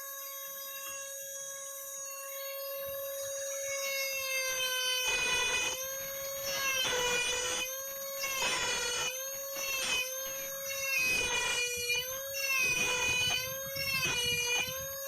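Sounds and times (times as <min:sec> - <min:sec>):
rotary carving tool whining: 0:02.5 - 0:15.0
bit cutting wood in gritty bursts: 0:04.5 - 0:15.0.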